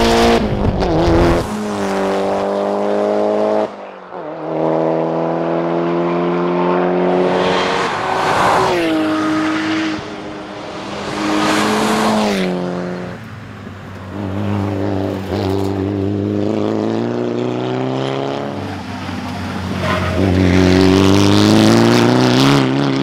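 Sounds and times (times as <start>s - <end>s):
car engine revving hard: 0.0s - 3.8s, 20.1s - 23.0s
tyre and road noise: 5.9s - 23.0s.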